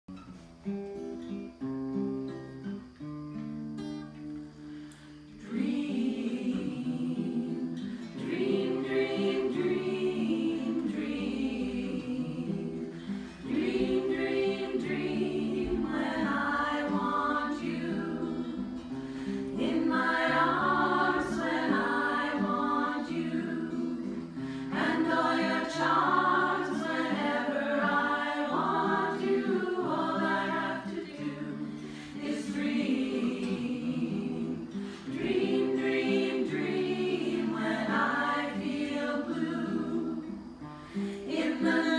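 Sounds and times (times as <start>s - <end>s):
vocal ensemble singing in harmony: 5.3s - 41.9s.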